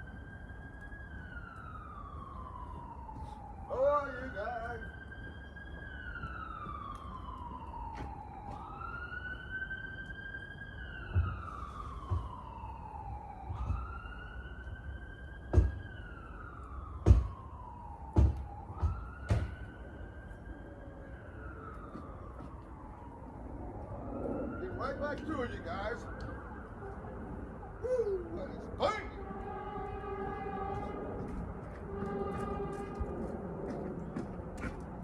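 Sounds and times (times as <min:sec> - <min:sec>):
emergency siren wailing: 0:00.0 - 0:35.0
sharp knocks: 0:17.0 - 0:17.3, 0:18.1 - 0:19.6.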